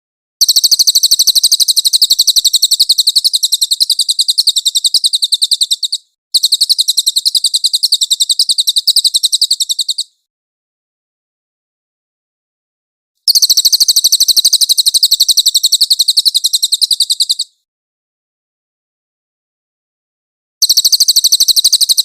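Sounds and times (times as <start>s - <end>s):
songbird rapid high chirps: 0.4s - 10.2s, 13.3s - 17.6s, 20.6s - 22.0s.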